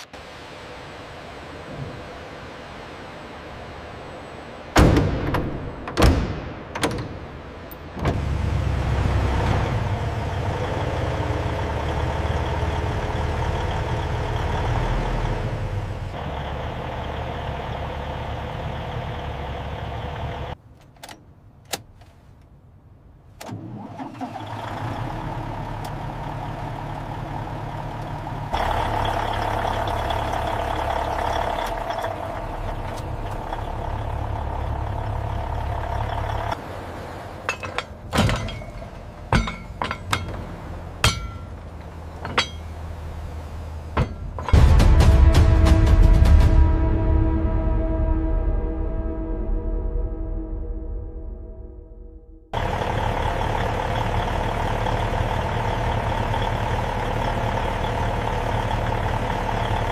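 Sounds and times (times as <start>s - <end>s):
diesel truck engine idling: 8.2s - 20.6s, 24.0s - 44.8s, 52.5s - 59.9s
sharp knocks: 44.0s - 44.9s.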